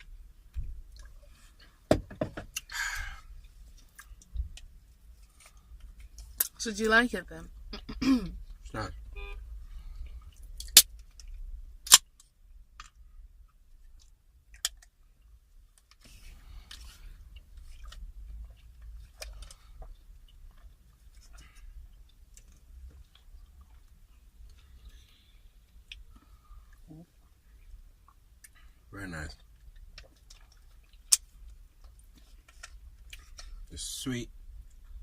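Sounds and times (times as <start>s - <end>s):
chewing and mouth noises: 0.8s - 1.8s, 2.5s - 6.6s, 12.2s - 33.7s.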